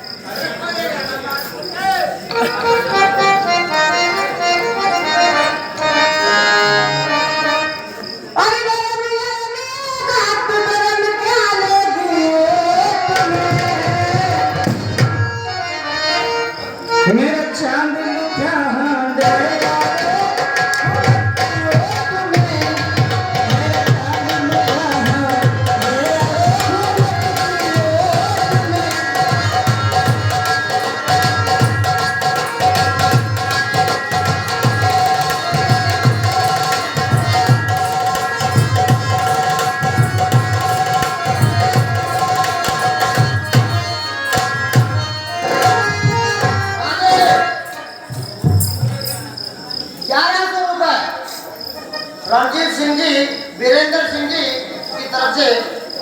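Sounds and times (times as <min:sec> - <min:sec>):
folk melody with slides: 0:02.4 - 0:08.0.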